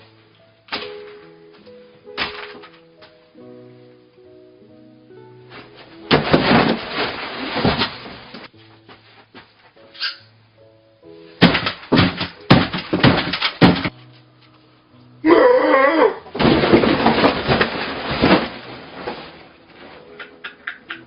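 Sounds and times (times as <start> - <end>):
background music: 0.0 - 21.0
loud sharp crashing knocks: 6.1 - 8.5, 11.4 - 13.9, 16.4 - 19.4.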